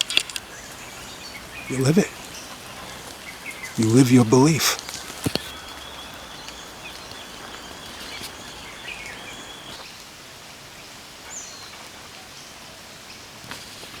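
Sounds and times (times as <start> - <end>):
bird chirps: 0.0 - 9.8
steady background hiss: 0.0 - 14.0.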